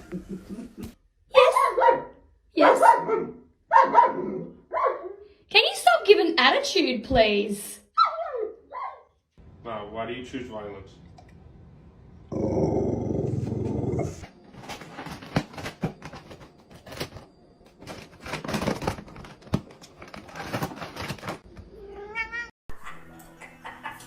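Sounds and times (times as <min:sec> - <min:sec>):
knocks and scuffling: 0:14.3 - 0:21.8
cat yowling: 0:21.8 - 0:22.5.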